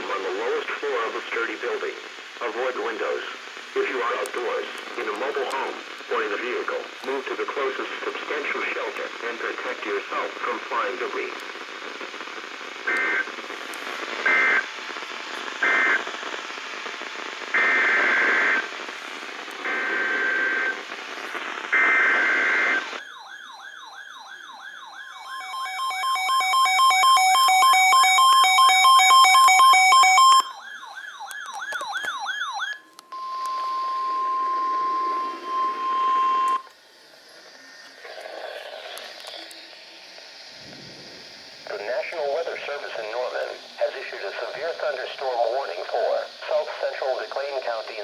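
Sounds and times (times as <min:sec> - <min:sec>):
siren-like warble with beeps: 0:21.8 - 0:36.7
screeching data bursts: 0:25.1 - 0:30.6, 0:33.0 - 0:40.6.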